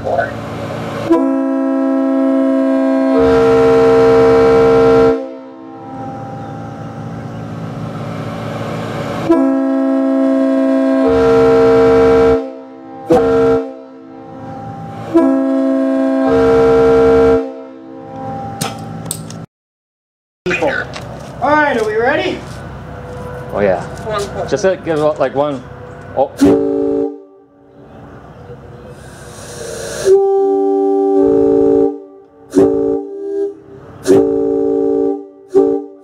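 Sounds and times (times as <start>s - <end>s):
short horn toot: 1.0s - 6.3s, 9.2s - 18.1s, 26.4s - 27.3s, 29.6s - 36.0s
locomotive air horn chord: 1.0s - 7.2s, 9.2s - 18.5s, 25.4s - 27.7s, 28.9s - 36.0s.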